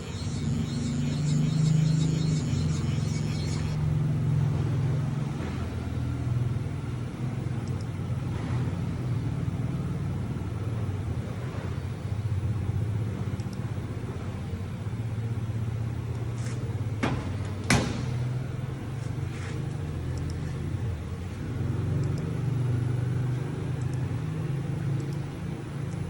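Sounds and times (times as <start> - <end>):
machine humming: 0.0 - 4.6.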